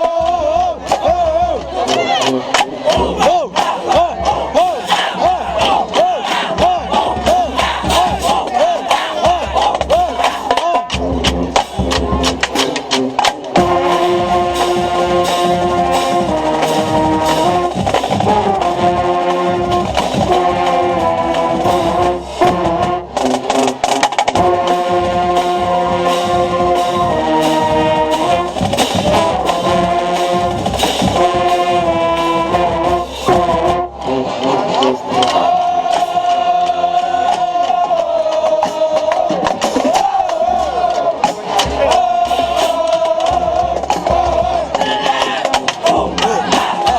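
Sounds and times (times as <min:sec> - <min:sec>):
drumline hits: 0:00.0 - 0:46.9
marching band brass chords: 0:00.0 - 0:46.9.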